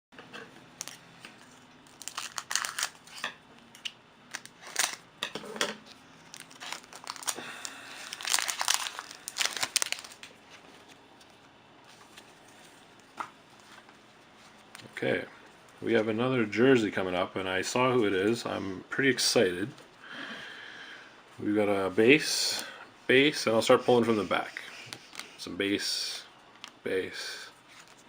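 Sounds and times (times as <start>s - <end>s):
wrapper crinkling: 0.8s - 3.3s, 4.3s - 5.0s, 6.2s - 11.0s.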